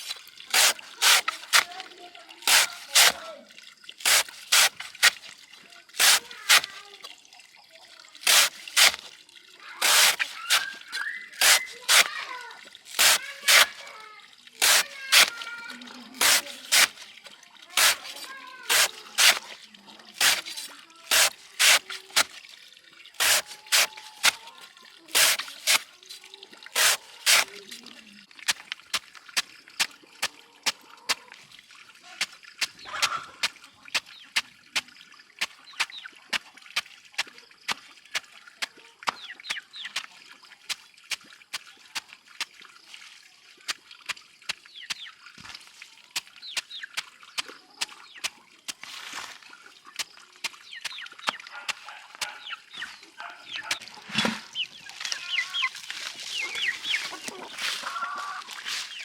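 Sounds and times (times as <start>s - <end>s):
chickens clucking: 32.8s - 33.5s, 50.8s - 59.0s.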